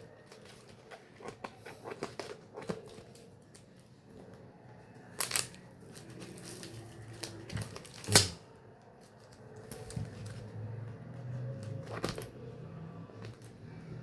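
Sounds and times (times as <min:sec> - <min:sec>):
plastic packaging clicks and rustles: 0:05.0 - 0:10.7.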